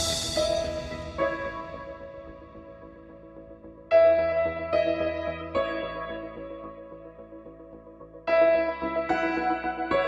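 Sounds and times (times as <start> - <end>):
soft ambient note: 0.0 - 3.9.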